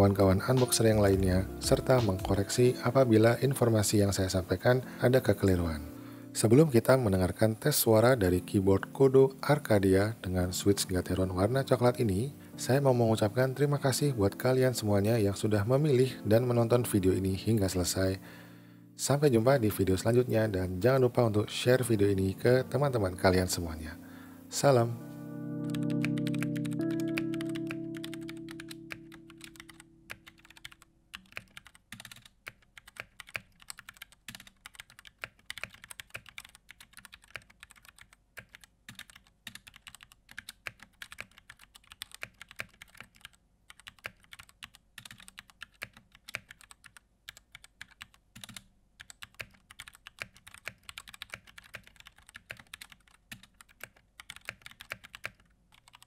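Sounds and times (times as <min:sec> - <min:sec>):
held music chord: 0:00.0 - 0:04.0, 0:19.5 - 0:30.5
mechanical keyboard typing: 0:25.6 - 0:56.0.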